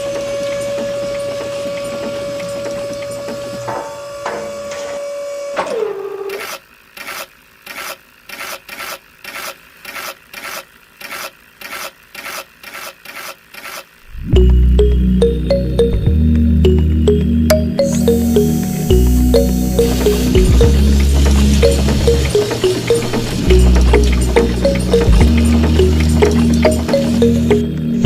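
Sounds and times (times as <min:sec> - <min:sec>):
small electric motor whining: 0:00.0 - 0:14.2.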